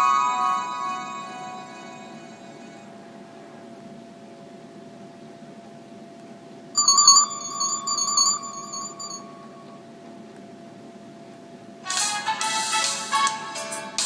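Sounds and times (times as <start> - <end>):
phone alert chimes: 6.8 - 9.6.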